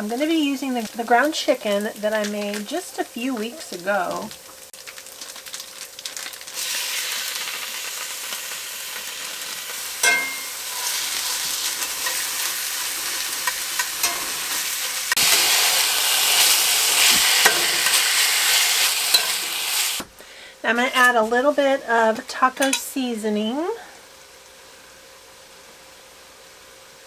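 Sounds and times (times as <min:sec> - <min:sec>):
meat sizzling in a pan: 0:00.0 - 0:27.0
utensil scraping a pan: 0:10.0 - 0:20.1, 0:20.7 - 0:23.0.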